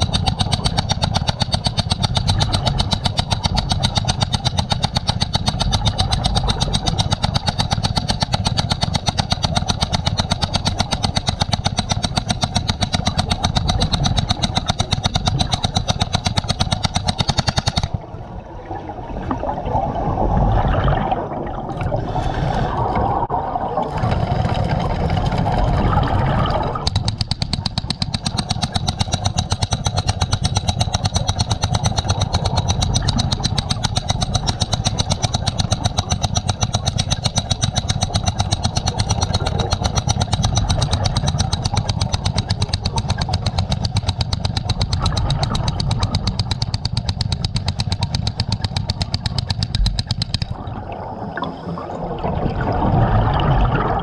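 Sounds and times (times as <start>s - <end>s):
hammer drill hammering into concrete: 0.0s - 18.0s, 26.8s - 50.6s
rough irregular drill sound: 0.0s - 18.0s, 23.9s - 50.6s.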